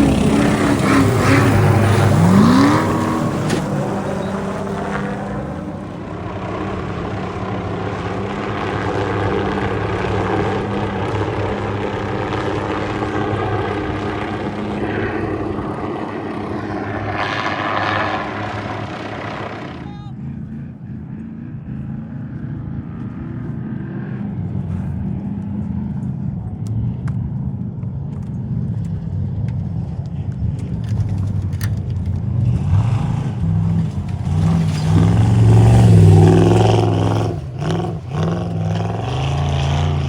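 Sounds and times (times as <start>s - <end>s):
race vehicle engine revving: 0.0s - 20.1s, 30.9s - 40.0s.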